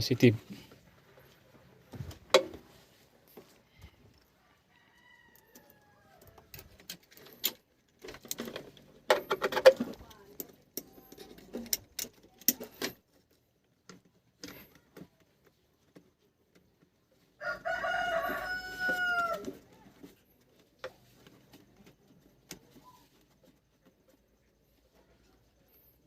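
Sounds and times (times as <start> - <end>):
rooster crowing: 4.4 - 6.5, 17.4 - 19.6.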